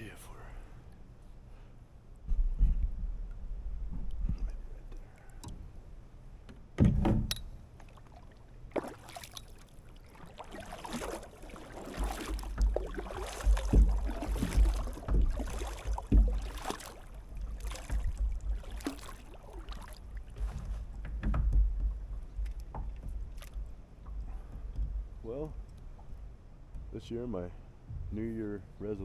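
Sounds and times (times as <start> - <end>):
water splashing around kayak: 7.6 - 27.0.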